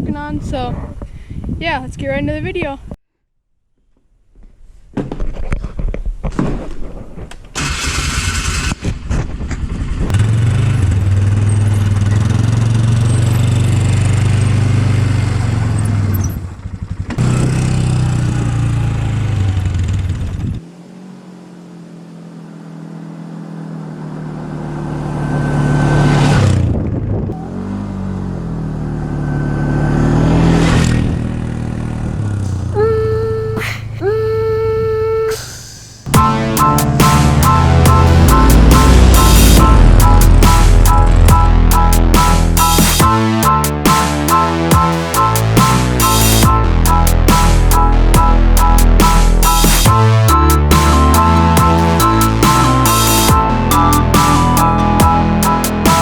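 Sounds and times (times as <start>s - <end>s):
atv engine revving: 7.6s - 56.0s
music track: 36.1s - 56.0s.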